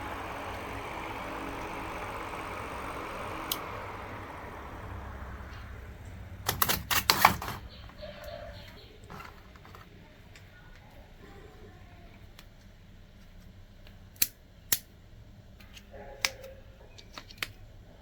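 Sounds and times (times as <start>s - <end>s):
sharp clicks and clatter: 0.0s - 4.6s, 5.4s - 10.8s
small fan motor whirring: 0.0s - 11.0s.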